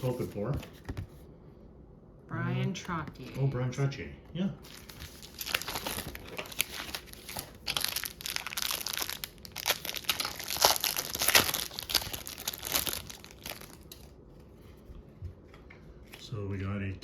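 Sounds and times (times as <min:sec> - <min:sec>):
wrapper tearing and crinkling: 0:04.6 - 0:14.1.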